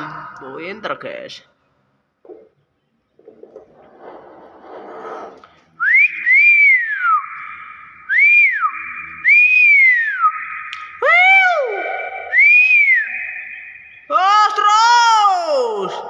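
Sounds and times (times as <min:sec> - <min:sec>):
bird whistling: 0:05.8 - 0:15.7.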